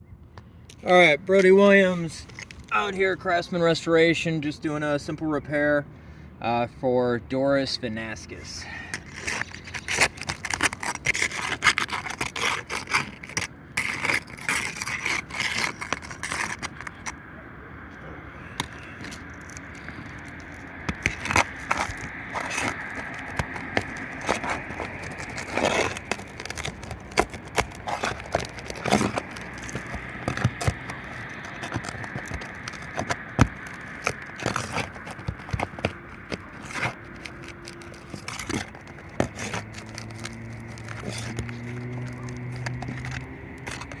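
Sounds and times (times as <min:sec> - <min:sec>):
tools scraping roof shingles: 0:08.7 - 0:17.2, 0:18.6 - 0:44.0.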